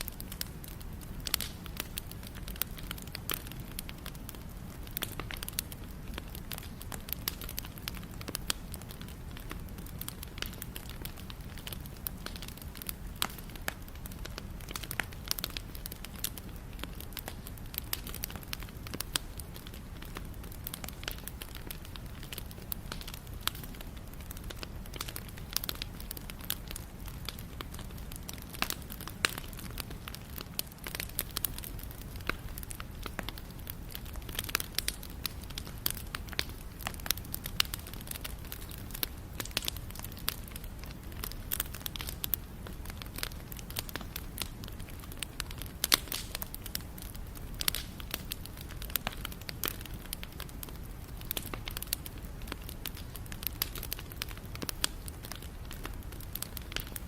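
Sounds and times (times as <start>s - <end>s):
wood crackling and popping: 0.0s - 57.0s
wood fire rumbling: 0.0s - 57.0s.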